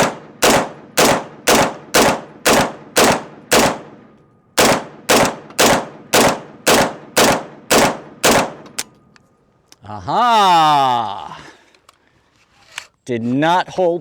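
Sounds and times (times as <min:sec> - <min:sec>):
carbine gunshots with echo: 0:00.0 - 0:08.9.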